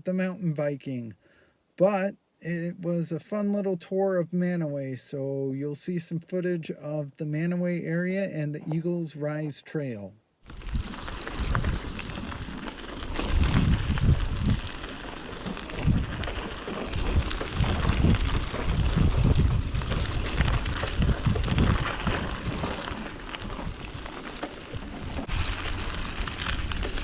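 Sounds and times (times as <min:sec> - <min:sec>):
crackling hiss: 0:04.4 - 0:27.0
wind buffeting microphone: 0:10.4 - 0:27.0.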